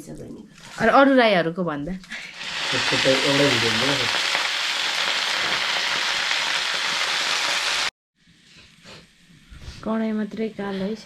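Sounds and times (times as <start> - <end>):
food sizzling in hot oil: 2.2 - 7.9.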